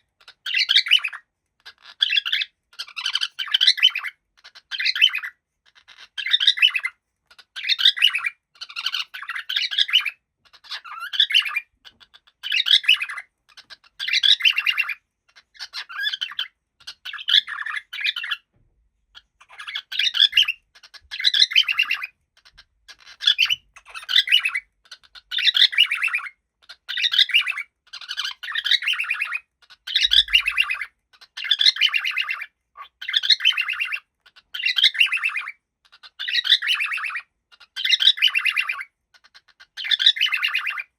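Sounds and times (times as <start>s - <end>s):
cockatiel chattering and warbling: 0.0s - 40.9s.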